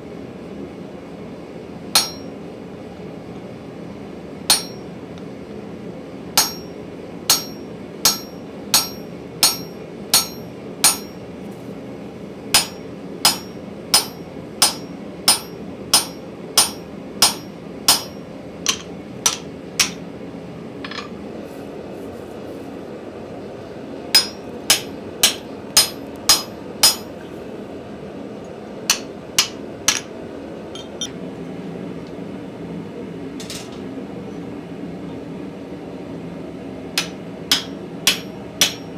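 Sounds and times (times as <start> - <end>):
hammer striking steel on anvil: 2.0 - 2.4, 4.5 - 4.9, 6.4 - 11.3, 12.6 - 20.1, 24.2 - 27.2, 28.9 - 30.1, 37.0 - 38.9.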